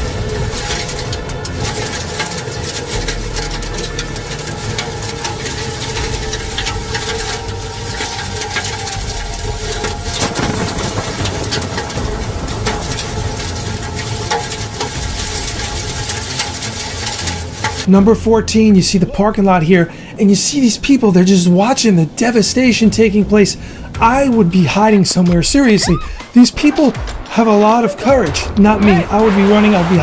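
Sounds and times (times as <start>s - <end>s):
hail falling hard: 0.0s - 17.9s, 23.6s - 30.0s
loud crack: 0.0s - 17.9s, 26.2s - 30.0s.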